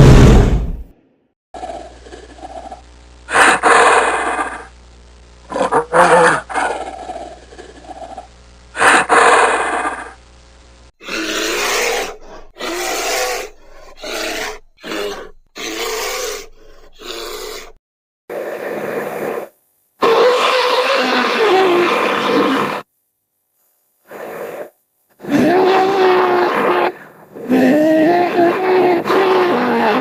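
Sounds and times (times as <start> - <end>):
creature roaring: 1.6 - 4.7, 5.5 - 10.2, 11.0 - 17.8, 20.0 - 22.8, 25.2 - 30.0
steady low hum: 1.6 - 10.9
grunting roars: 11.0 - 17.8, 20.0 - 22.8, 25.2 - 30.0.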